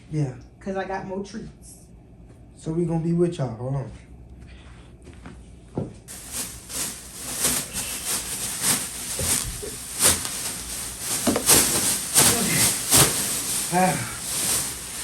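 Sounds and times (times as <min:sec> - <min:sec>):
soft knocks and scuffs: 0:04.0 - 0:06.0
rustling handling noise: 0:06.1 - 0:15.0
steady hiss: 0:06.1 - 0:15.0.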